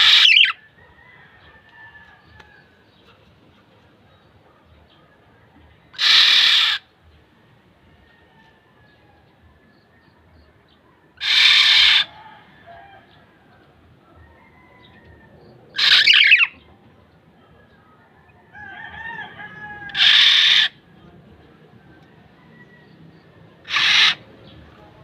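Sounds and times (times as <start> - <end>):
harsh nasal bird calls: 0.0 - 0.6, 5.9 - 6.9, 11.2 - 12.2, 15.7 - 16.6, 19.9 - 20.8, 23.6 - 24.6.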